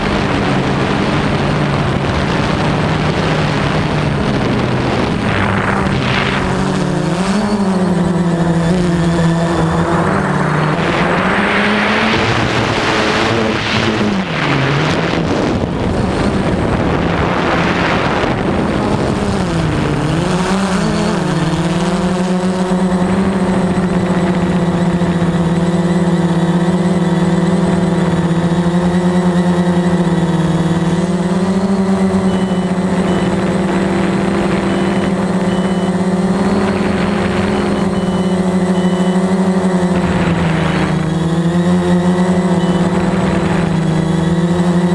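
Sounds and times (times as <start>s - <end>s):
rushing noise: 0.0s - 19.8s
quadcopter propellers humming: 0.0s - 44.9s.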